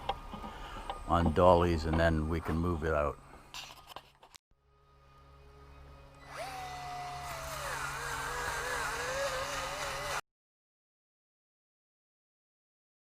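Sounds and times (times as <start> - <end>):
electric power tool motor: 6.2 - 10.2.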